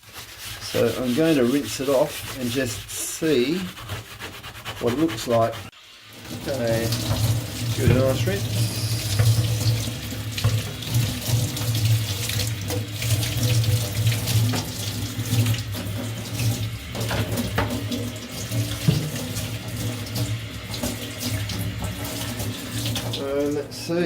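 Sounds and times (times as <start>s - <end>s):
tap water splashing in sink: 6.0s - 23.8s.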